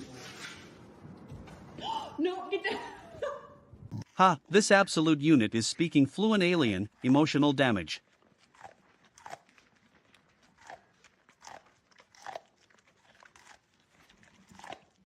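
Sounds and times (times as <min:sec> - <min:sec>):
pet chewing crunchy food: 0:04.0 - 0:15.0.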